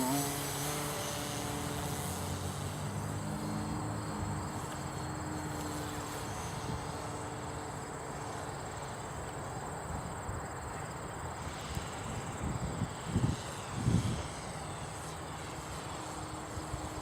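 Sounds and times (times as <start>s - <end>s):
distant model aircraft motor drone: 0.0s - 17.0s
wind noise on microphone: 6.1s - 7.2s, 11.4s - 17.0s.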